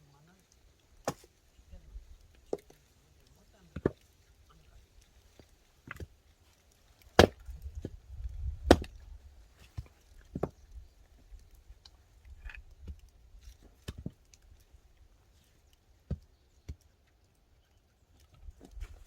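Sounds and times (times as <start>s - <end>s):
axe striking firewood: 1.0s - 1.3s, 3.7s - 4.0s, 7.0s - 9.0s, 9.7s - 10.6s, 13.8s - 14.2s.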